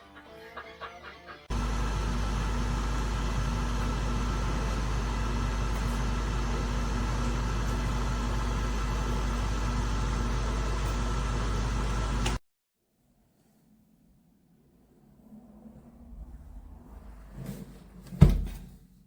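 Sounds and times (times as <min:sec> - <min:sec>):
machine humming and rumbling: 0:00.8 - 0:12.4.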